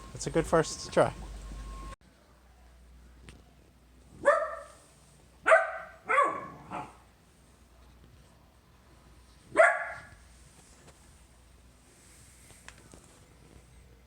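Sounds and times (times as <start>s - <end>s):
puppy barking: 4.2s - 4.8s, 5.4s - 7.0s, 9.5s - 10.2s.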